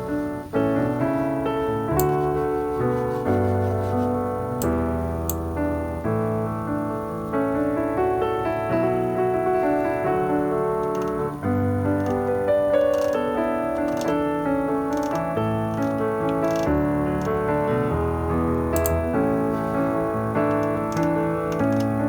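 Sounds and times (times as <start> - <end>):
piano music: 0.0 - 22.0
faint clicks: 10.8 - 11.3, 14.9 - 17.5, 18.8 - 19.1, 19.9 - 22.0.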